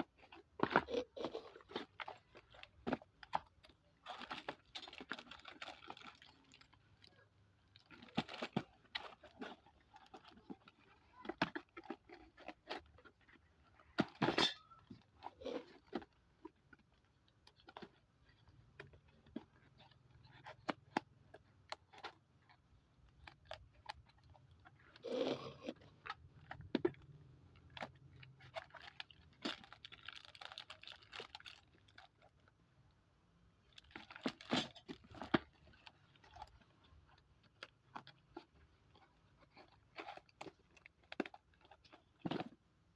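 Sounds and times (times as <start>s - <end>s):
packaging crinkling: 27.6s - 32.2s.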